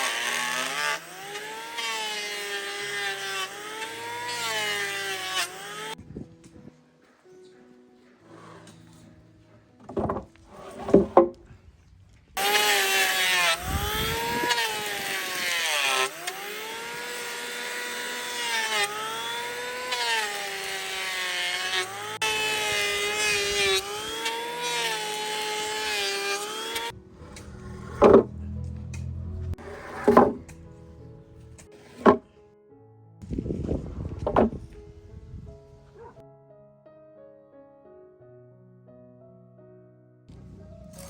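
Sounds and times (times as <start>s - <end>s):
power tool cutting wood: 0.0s - 6.0s, 12.4s - 30.7s, 40.3s - 41.0s
knocking: 29.9s - 30.6s, 34.2s - 34.6s.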